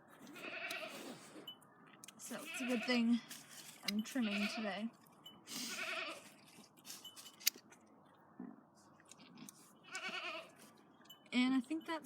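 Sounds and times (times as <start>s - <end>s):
goat bleating: 0.2s - 1.1s, 2.3s - 3.3s, 4.0s - 4.9s, 5.6s - 6.4s, 9.8s - 10.6s.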